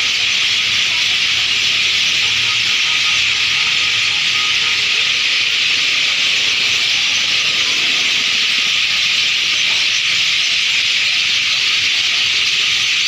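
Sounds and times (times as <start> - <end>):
flock of birds chirping: 0.0 - 13.0.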